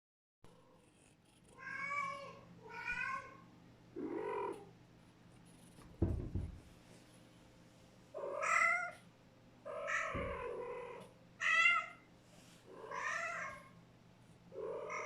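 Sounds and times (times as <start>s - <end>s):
low thump: 5.9s - 6.7s, 10.1s - 10.5s.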